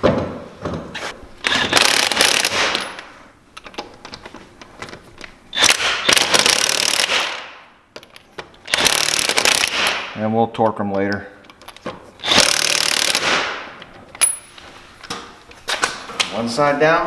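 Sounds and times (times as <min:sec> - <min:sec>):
impact wrench rattling: 0:01.4 - 0:10.2, 0:11.4 - 0:14.8.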